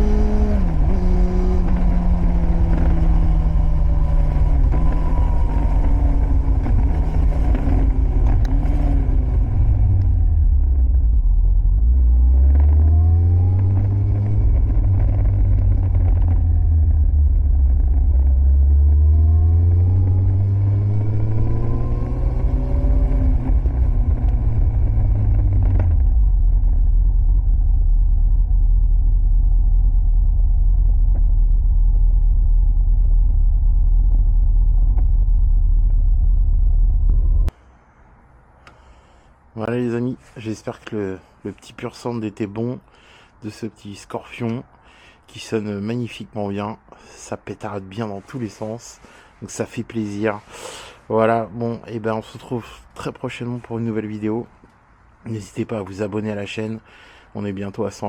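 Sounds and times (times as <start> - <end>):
motorcycle engine revving: 0.0 - 37.5
steady low rumble: 0.0 - 58.0.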